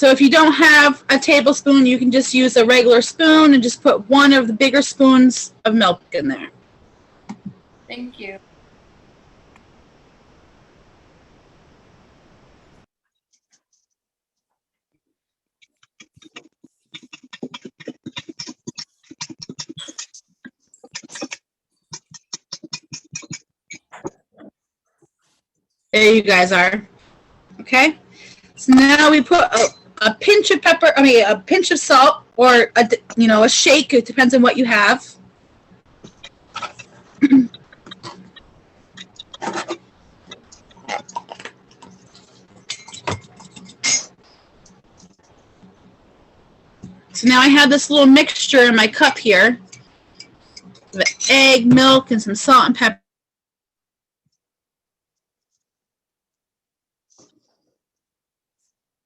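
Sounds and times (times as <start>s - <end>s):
fork beating egg in cup: 15.6s - 23.9s, 36.0s - 45.4s, 48.3s - 51.5s
kitchen items clicking and knocking: 42.6s - 44.1s.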